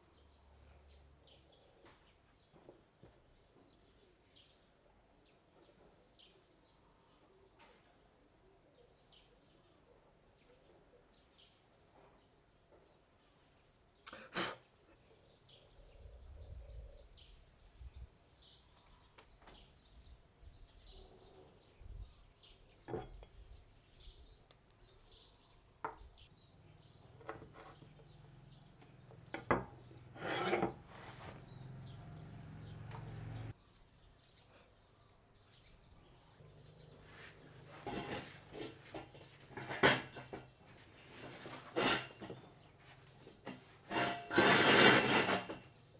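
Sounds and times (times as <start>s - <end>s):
rasping scrapes on wood: 30.0s - 31.4s.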